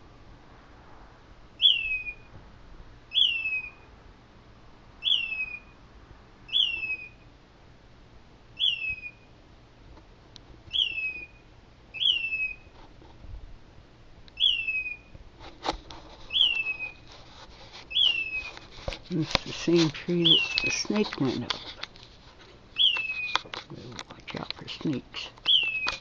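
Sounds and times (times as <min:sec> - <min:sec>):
bird whistling call: 0:01.6 - 0:02.3, 0:03.1 - 0:03.8, 0:05.0 - 0:05.7, 0:06.5 - 0:07.2, 0:08.6 - 0:09.3, 0:10.7 - 0:11.4, 0:12.0 - 0:12.7, 0:14.4 - 0:15.1, 0:16.3 - 0:17.0, 0:17.9 - 0:18.5, 0:22.8 - 0:23.4, 0:25.4 - 0:26.0.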